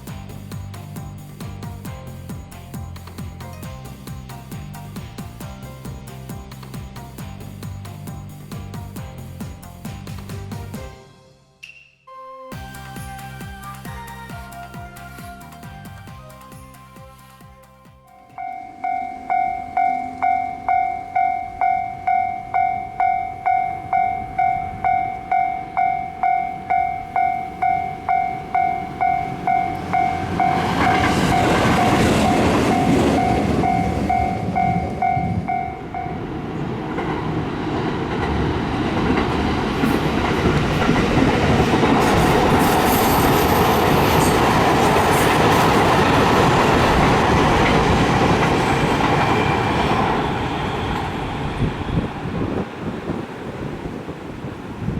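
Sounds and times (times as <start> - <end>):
level-crossing warning bell: 18.1 - 36.8
train wheels on rails: 18.1 - 54.9.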